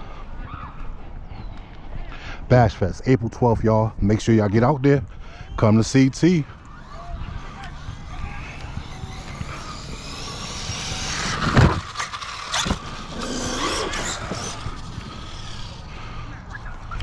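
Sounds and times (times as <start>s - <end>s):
rc truck motor whining: 5.8s - 17.0s.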